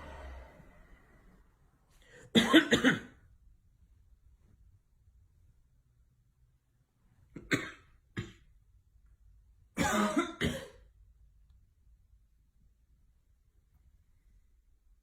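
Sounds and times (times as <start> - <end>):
person coughing: 2.3 - 3.2, 7.4 - 8.5, 9.8 - 10.9.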